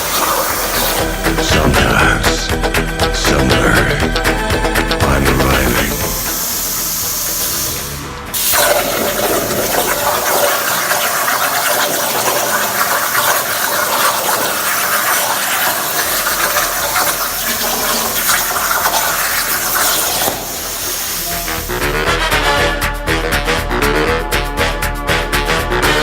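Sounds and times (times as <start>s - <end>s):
plasma torch hissing and crackling: 0.0s - 1.6s, 5.6s - 21.9s.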